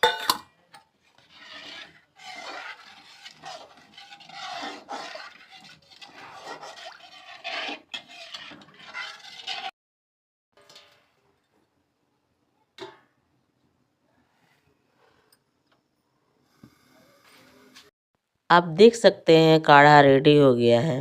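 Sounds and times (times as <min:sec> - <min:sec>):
spoon stirring and scraping a pan: 0:00.0 - 0:09.7.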